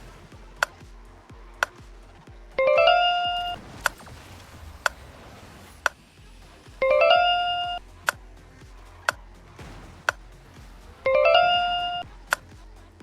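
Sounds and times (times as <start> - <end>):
low pulsing beat: 0.0 - 4.0, 5.9 - 13.0.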